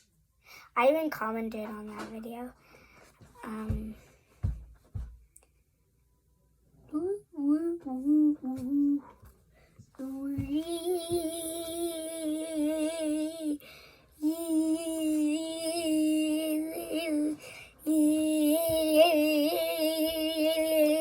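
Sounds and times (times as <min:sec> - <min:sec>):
child singing long notes: 0:06.9 - 0:09.0, 0:10.0 - 0:13.6, 0:14.2 - 0:21.0.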